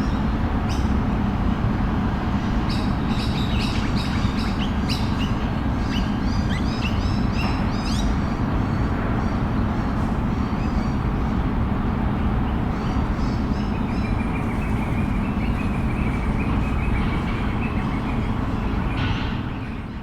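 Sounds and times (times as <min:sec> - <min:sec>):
traffic rumble: 0:00.0 - 0:20.0
birds chirping: 0:12.5 - 0:20.0.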